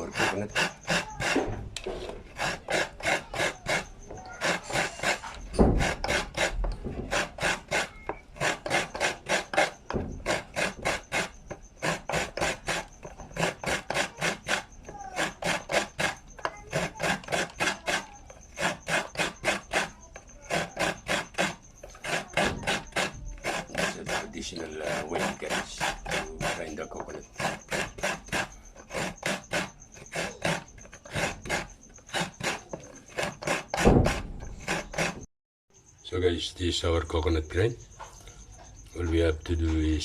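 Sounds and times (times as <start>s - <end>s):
coconut grating scrapes: 0.0s - 35.3s
heavy thump: 5.5s - 5.8s, 33.8s - 34.4s.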